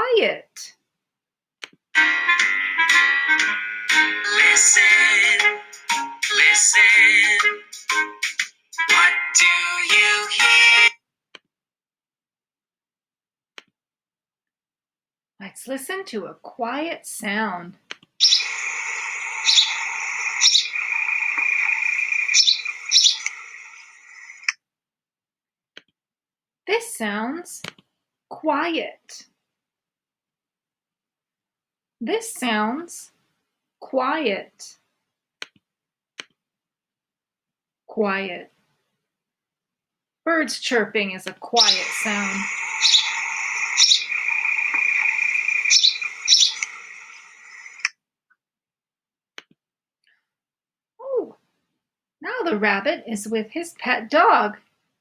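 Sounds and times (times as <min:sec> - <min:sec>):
birds chirping: 0:18.2 - 0:24.5, 0:41.6 - 0:47.8.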